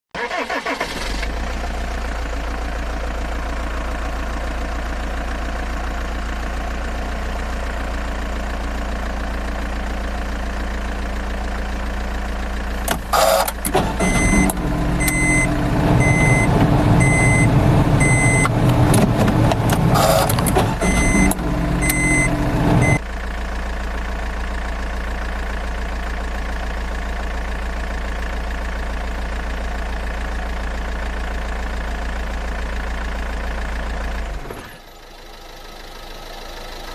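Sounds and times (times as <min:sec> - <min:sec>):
heavy truck engine idling: 0:01.6 - 0:36.9
reversing alarm beeping: 0:13.2 - 0:18.5, 0:20.0 - 0:23.0.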